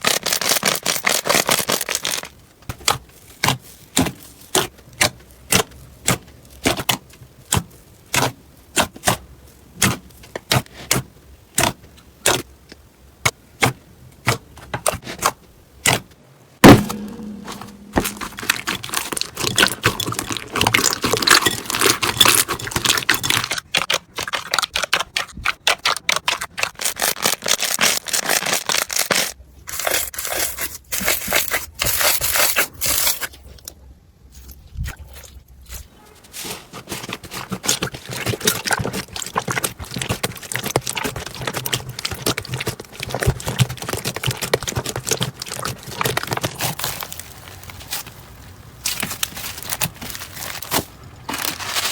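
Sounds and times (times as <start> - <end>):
loud crack: 16.6 - 19.4
crunchy slime crackling pops: 37.3 - 48.2.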